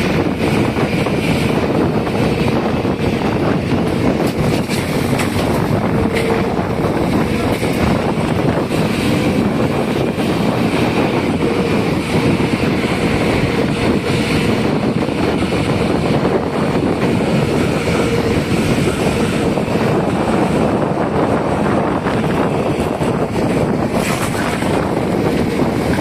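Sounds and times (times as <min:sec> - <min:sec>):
excavator diesel engine working: 0:00.0 - 0:26.0
wind noise on microphone: 0:00.0 - 0:26.0.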